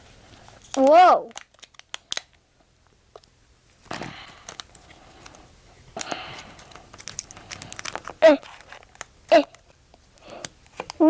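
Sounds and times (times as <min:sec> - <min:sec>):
plastic wrapping rustling: 0:06.5 - 0:09.1.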